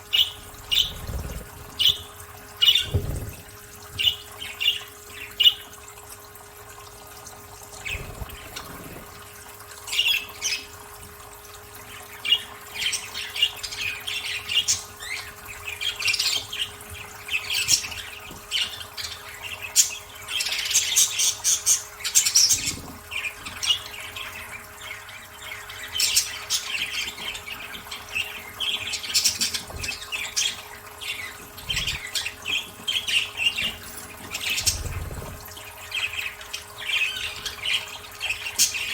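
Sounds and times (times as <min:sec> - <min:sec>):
budgerigars chirping: 0:00.1 - 0:03.3, 0:12.2 - 0:35.3.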